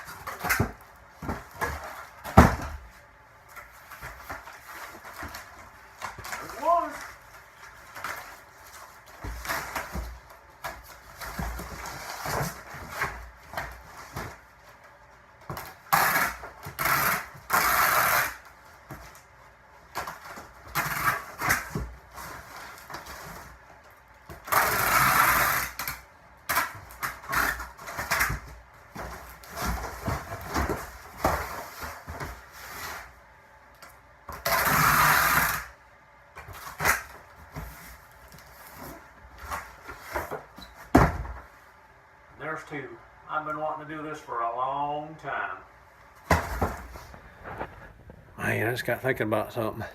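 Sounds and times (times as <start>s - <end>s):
cardboard rustling and knocks: 0.0s - 2.9s, 27.7s - 32.5s, 36.4s - 41.5s, 46.2s - 47.8s
packing tape pulled off roll: 15.5s - 19.3s, 19.9s - 23.6s, 24.3s - 33.1s, 34.3s - 35.8s.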